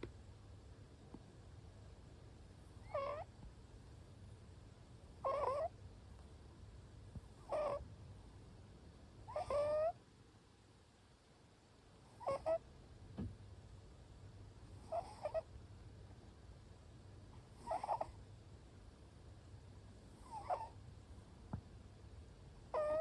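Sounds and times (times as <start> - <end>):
cat snoring: 2.6 - 3.3, 5.2 - 5.7, 7.3 - 7.8, 9.2 - 10.0, 12.1 - 12.6, 14.7 - 15.5, 17.5 - 18.2, 20.1 - 20.8, 22.7 - 23.0.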